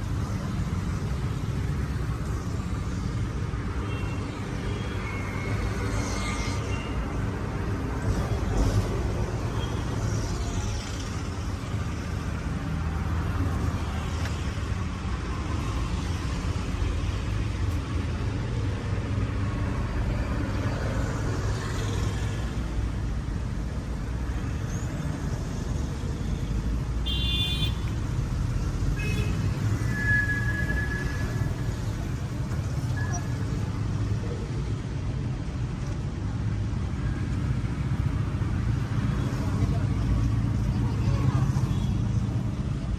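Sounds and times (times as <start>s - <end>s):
road traffic rumbling: 0.0s - 42.9s.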